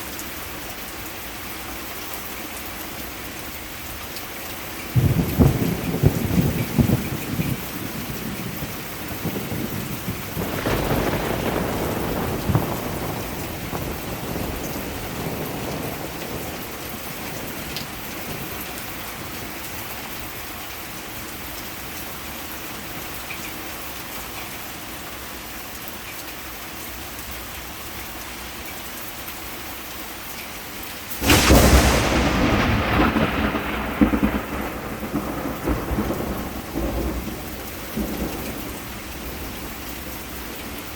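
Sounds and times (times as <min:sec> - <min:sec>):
heavy rain: 0:00.0 - 0:40.9
loud thunderclap: 0:05.0 - 0:18.6, 0:31.1 - 0:40.1
thunder: 0:05.0 - 0:18.6, 0:31.1 - 0:40.8.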